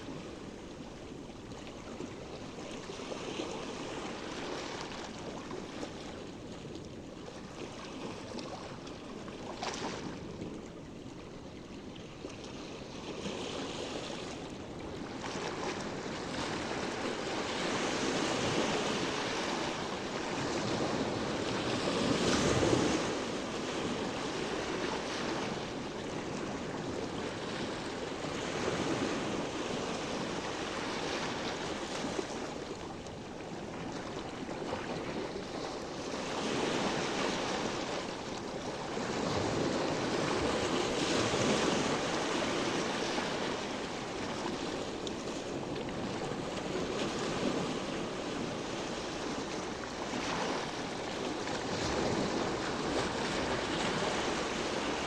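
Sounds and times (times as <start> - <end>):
sea waves washing ashore: 13.5 - 55.0.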